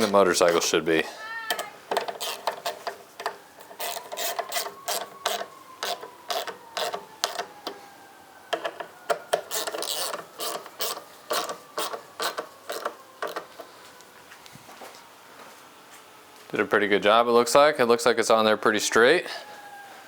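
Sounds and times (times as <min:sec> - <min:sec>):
hand ratchet clicking: 0:01.5 - 0:07.8, 0:08.5 - 0:13.6.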